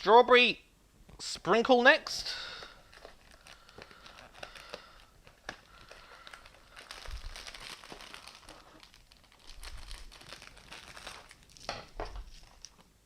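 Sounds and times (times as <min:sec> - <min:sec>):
wrapper crinkling: 0:02.6 - 0:13.0.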